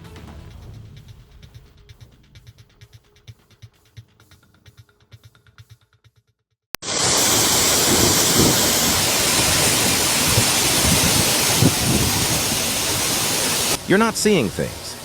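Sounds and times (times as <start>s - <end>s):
heavy pouring rain: 6.8s - 15.0s.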